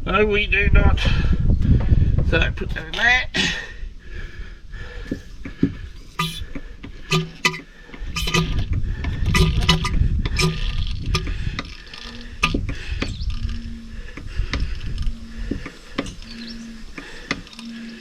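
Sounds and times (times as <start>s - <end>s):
low wind rumble: 0.0s - 18.0s
hand oil pump clinking strokes: 5.4s - 18.0s.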